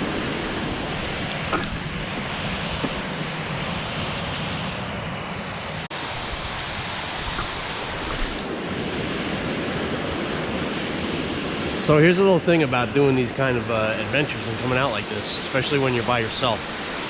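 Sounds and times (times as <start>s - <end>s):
waterfall rushing: 5.8s - 9.7s, 11.0s - 17.0s.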